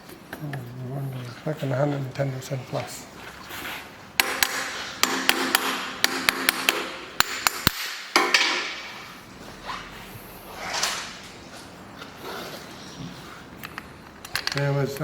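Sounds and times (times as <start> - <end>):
hammer striking metal: 4.2 - 8.9.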